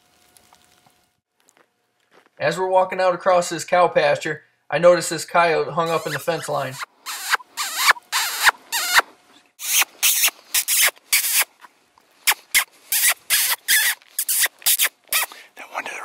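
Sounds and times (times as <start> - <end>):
footsteps crunching on icy grass: 0.0 - 2.4.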